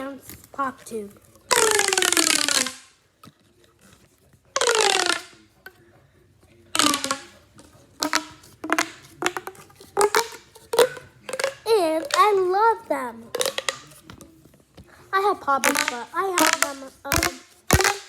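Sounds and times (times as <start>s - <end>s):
plastic pop tube stretching: 0.0s - 18.0s
plastic tube clicks: 1.5s - 3.4s, 4.5s - 5.8s, 6.7s - 14.6s, 15.2s - 18.0s.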